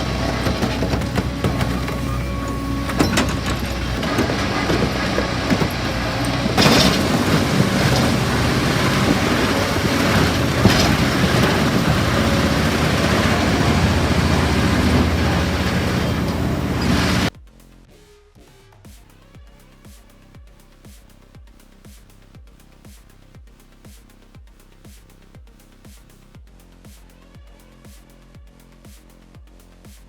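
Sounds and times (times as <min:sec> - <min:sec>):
diesel engine droning: 0:00.0 - 0:17.3.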